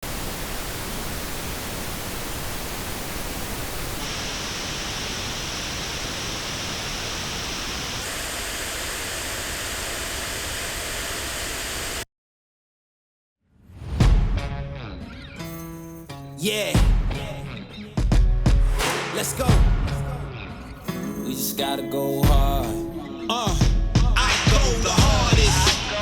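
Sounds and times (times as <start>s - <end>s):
pink noise test signal: 0.0s - 12.0s.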